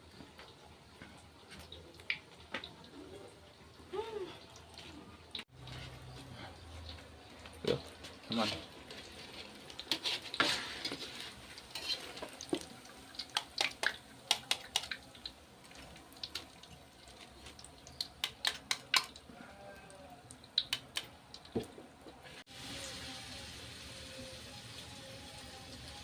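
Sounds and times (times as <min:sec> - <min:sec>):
faint sizzle: 0:00.0 - 0:26.0
utensil scraping against a pan: 0:08.4 - 0:12.6.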